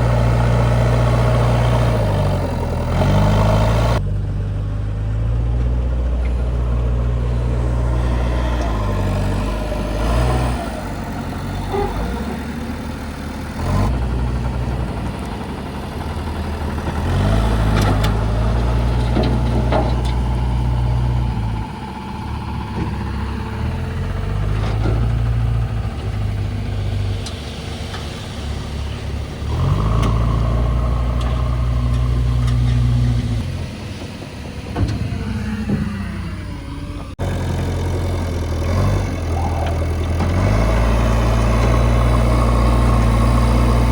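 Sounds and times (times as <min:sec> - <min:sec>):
heavy diesel machinery engines: 0:00.0 - 0:43.9.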